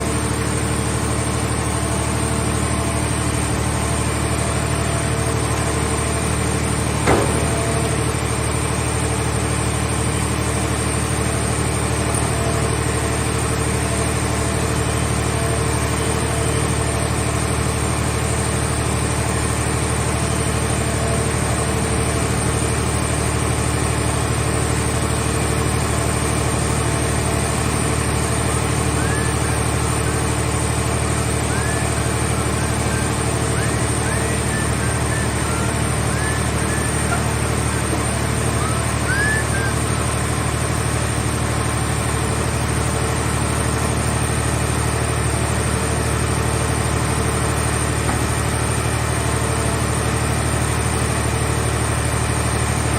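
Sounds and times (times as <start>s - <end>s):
baler engine running: 0.0s - 52.9s
sharp metallic clank: 7.1s - 8.1s.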